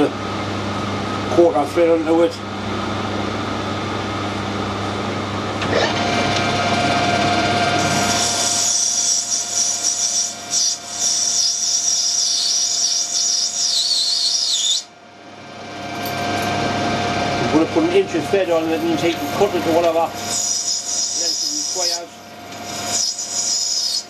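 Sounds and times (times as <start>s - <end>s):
metal lathe humming: 0.2s - 24.0s
high-pitched cutting squeal: 7.8s - 14.9s, 18.4s - 24.0s.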